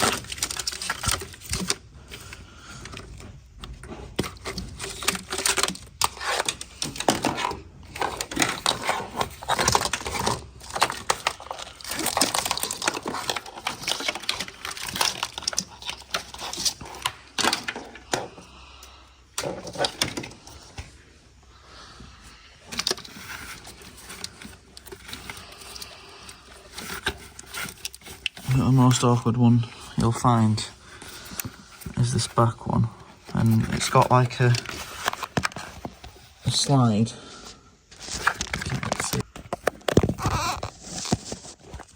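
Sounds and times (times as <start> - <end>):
hand tools clicking and rattling: 0.0 - 18.3.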